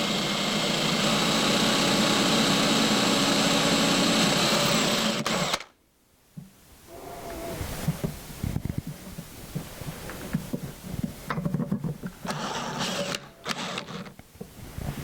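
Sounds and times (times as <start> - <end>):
drill boring into wood: 0.0 - 5.7, 12.3 - 14.2
knocks and rattles: 7.9 - 12.3.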